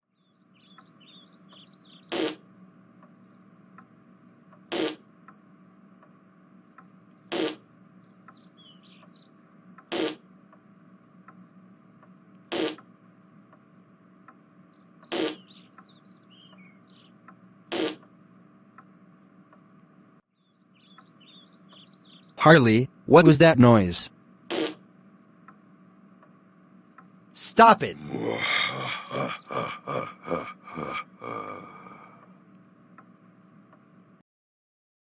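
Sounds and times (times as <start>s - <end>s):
short farting sound: 2.1s - 2.4s, 4.7s - 5.0s, 7.3s - 7.6s, 9.9s - 10.2s, 12.5s - 12.8s, 15.1s - 15.4s, 17.7s - 18.0s, 24.5s - 24.8s.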